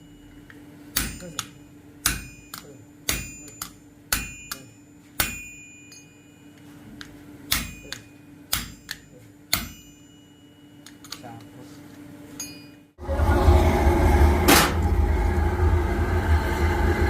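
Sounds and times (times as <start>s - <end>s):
hammer ringing on anvil: 0.0s - 6.8s, 7.5s - 11.2s, 12.4s - 12.9s
low hum: 12.4s - 17.0s.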